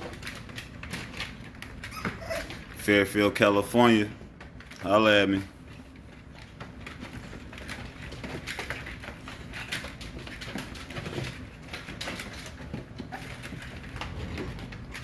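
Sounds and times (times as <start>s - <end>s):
puppies whimpering and squeaking: 0.0s - 3.0s, 7.0s - 15.0s.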